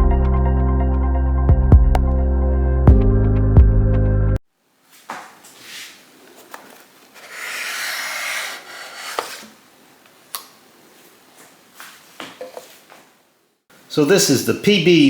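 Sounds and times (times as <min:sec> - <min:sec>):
rubbing sliding sound: 0:07.1 - 0:09.6.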